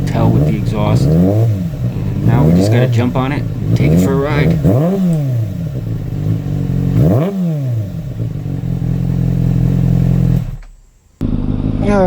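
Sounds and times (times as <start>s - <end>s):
motorcycle engine idling: 0.0s - 12.0s
throttle blip: 3.7s - 5.7s.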